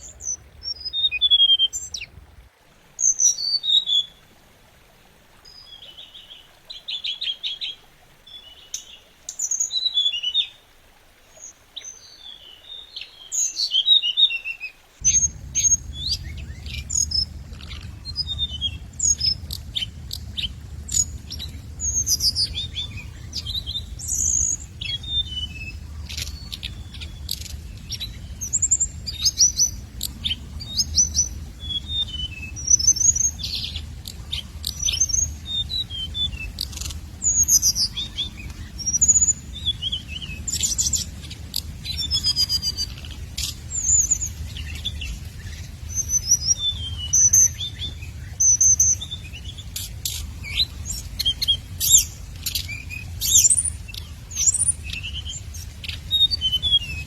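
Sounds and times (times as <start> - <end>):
songbird chirps and trills: 11.3 - 57.0
steady low hum: 15.0 - 57.0.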